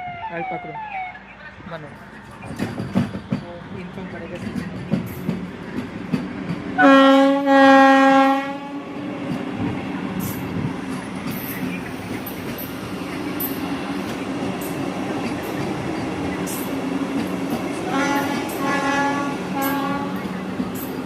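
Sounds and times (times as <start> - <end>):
train rumbling past: 0.8 - 21.0
train horn blasts: 6.8 - 8.8, 17.8 - 20.4.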